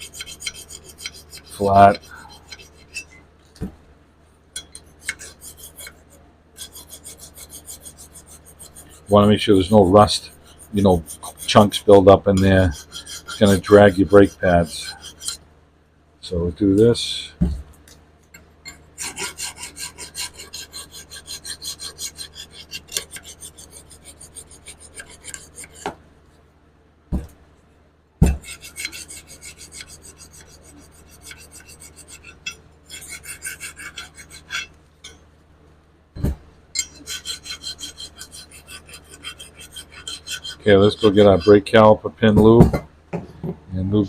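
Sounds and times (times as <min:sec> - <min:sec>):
hand file rasping on metal: 0:00.0 - 0:03.2, 0:04.6 - 0:15.4, 0:18.7 - 0:26.0, 0:28.3 - 0:34.8, 0:36.8 - 0:41.7.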